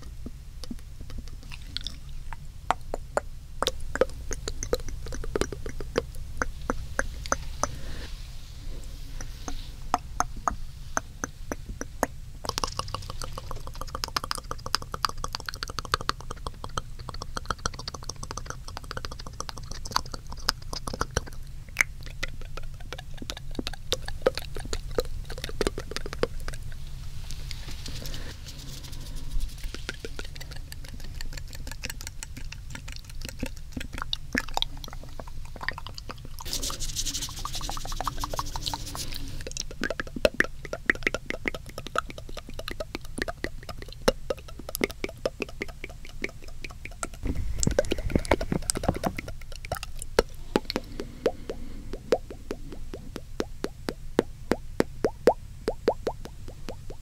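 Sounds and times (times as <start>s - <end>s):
tongue clicks: 0.0s - 8.1s, 9.2s - 57.0s
lip smacks: 0.0s - 57.0s
breathy hiss: 3.8s - 13.9s, 26.1s - 30.6s, 36.4s - 39.5s, 50.2s - 53.2s.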